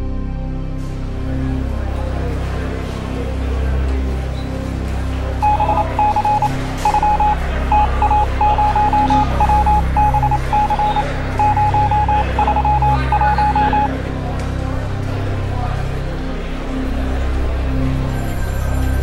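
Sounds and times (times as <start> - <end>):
rapid electronic beeps: 5.4 - 13.9.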